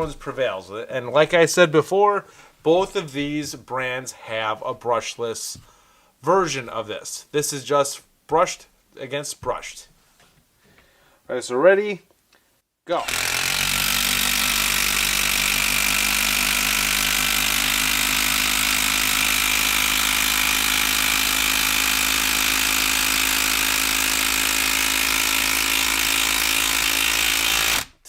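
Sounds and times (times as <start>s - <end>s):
impact driver hammering: 13.0s - 27.9s.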